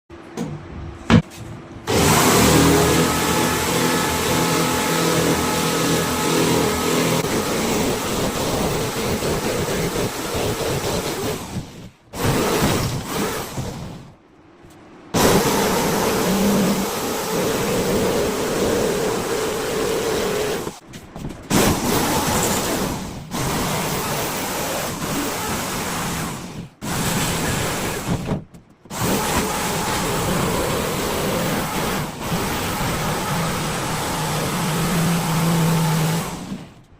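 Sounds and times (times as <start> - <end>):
motor running loudly: 1.9 - 13.8, 15.2 - 20.8, 28.9 - 36.7
power tool whirring: 1.9 - 14.1, 15.2 - 20.8, 21.5 - 28.3, 28.9 - 36.8.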